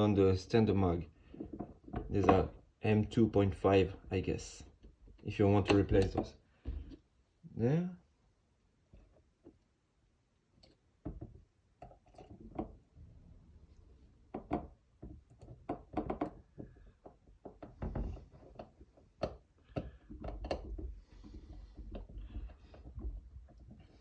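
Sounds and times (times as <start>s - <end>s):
plastic parts knocking and clicking: 1.2s - 2.7s, 4.7s - 7.1s, 10.6s - 12.9s, 14.2s - 24.0s.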